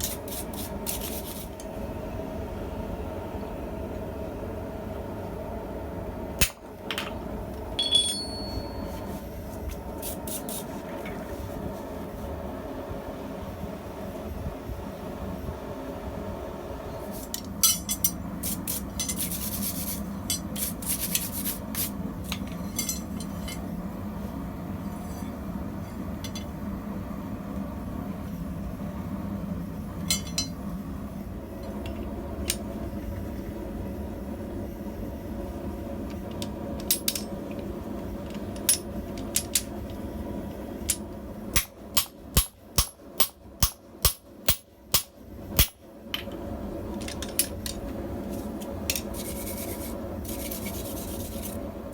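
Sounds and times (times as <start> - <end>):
hammer striking steel on anvil: 7.8 - 8.9, 30.1 - 30.6, 41.6 - 45.8
metal clinks: 7.8 - 8.9.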